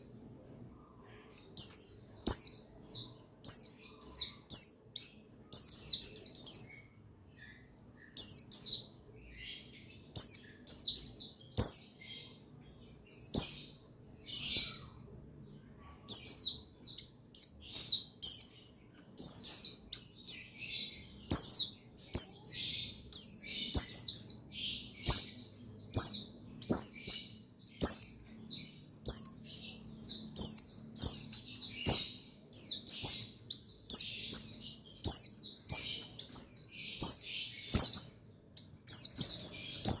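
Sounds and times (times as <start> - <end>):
birds chirping in rapid runs: 16.1 - 40.0.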